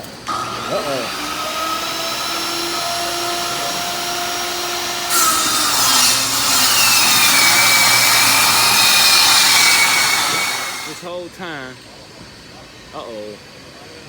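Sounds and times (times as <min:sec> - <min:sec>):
electric saw cutting wood: 0:00.0 - 0:11.1.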